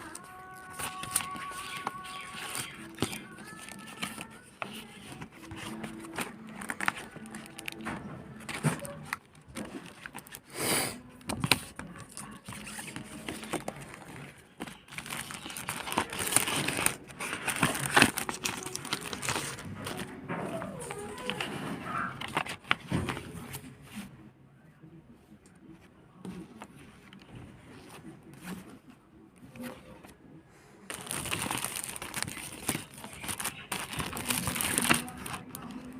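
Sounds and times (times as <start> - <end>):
packaging crinkling and tearing: 0.0 - 10.5, 11.2 - 23.2, 30.9 - 35.9.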